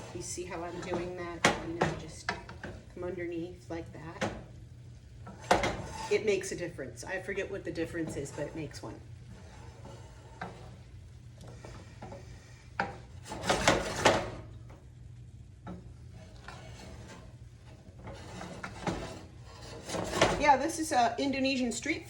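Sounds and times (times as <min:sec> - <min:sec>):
wooden spoon scraping rice in pan: 0:00.0 - 0:03.0, 0:05.3 - 0:06.4, 0:07.9 - 0:14.4, 0:15.6 - 0:20.6
steady low hum: 0:00.0 - 0:22.0.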